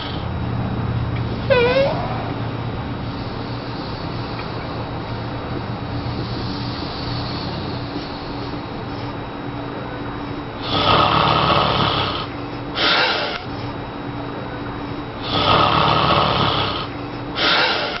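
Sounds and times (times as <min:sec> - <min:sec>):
man snoring loudly: 0:10.6 - 0:13.4, 0:15.2 - 0:18.0.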